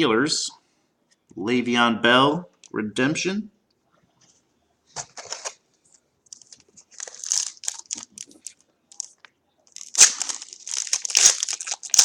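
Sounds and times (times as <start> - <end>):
cards and foil wrapper crinkling: 5.0 - 5.6, 6.3 - 12.0.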